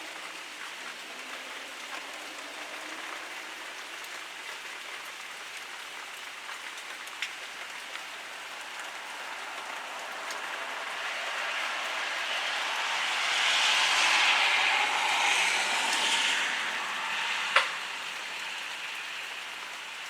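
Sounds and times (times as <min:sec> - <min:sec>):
heavy rain pouring: 0:00.0 - 0:20.0
raindrop taps: 0:17.5 - 0:17.9.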